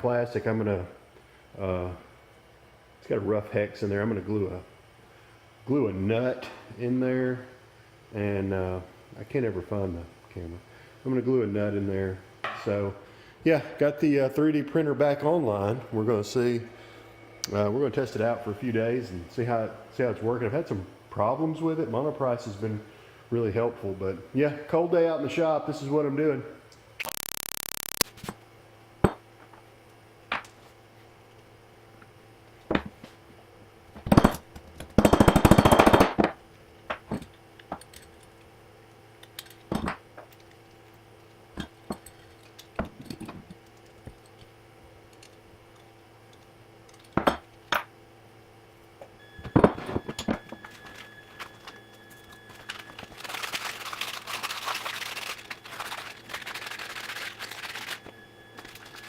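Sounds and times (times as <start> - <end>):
steady low hum: 0.0 - 59.0
small objects clicking and clinking: 52.5 - 59.0.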